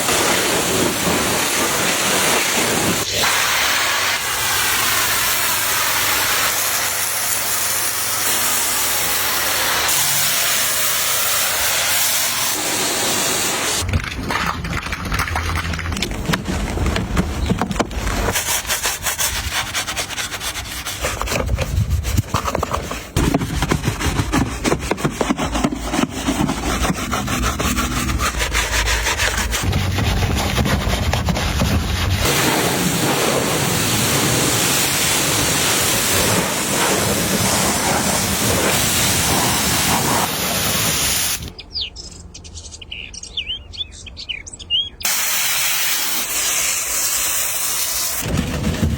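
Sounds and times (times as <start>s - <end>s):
hissing spray: 0.0s - 13.9s, 26.5s - 41.5s, 45.0s - 48.5s
scrubbing strokes: 16.5s - 41.3s.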